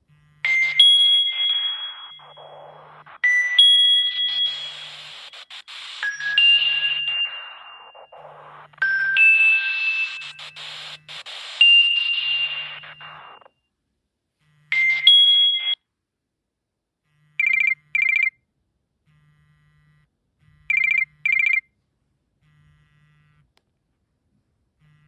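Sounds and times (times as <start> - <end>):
ringtone chime: 0.5 - 2.6, 3.2 - 5.2, 6.0 - 10.5, 11.6 - 13.4, 14.7 - 15.8, 17.4 - 18.3, 20.7 - 21.6
short beeps: 0.5 - 5.0, 6.0 - 10.7, 11.6 - 13.7, 14.7 - 15.8.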